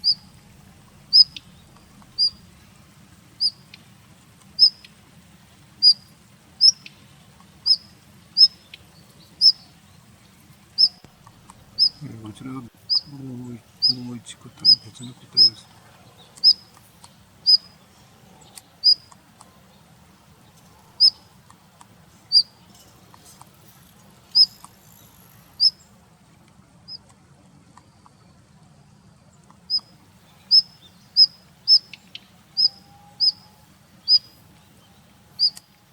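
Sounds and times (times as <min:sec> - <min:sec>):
bird call notes: 0:00.0 - 0:02.6, 0:10.8 - 0:16.8, 0:17.4 - 0:17.8, 0:29.7 - 0:35.7.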